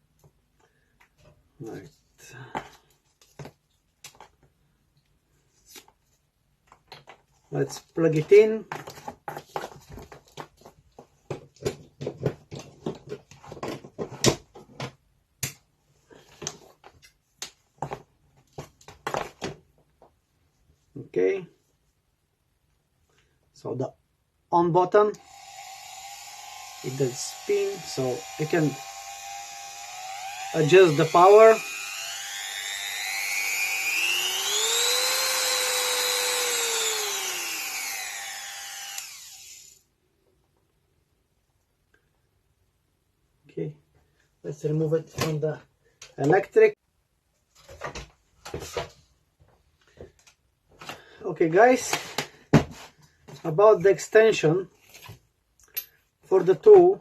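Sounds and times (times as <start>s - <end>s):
rotary tool motor whine: 25.2s - 39.8s.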